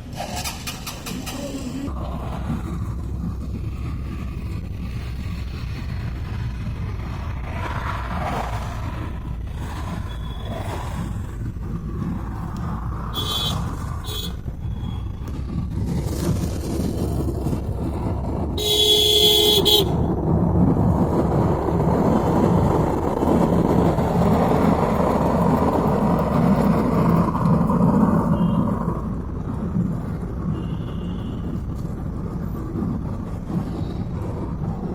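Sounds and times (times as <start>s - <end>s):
rumble of vehicles: 0.0s - 34.9s
car horns honking: 13.2s - 14.4s, 18.6s - 20.0s.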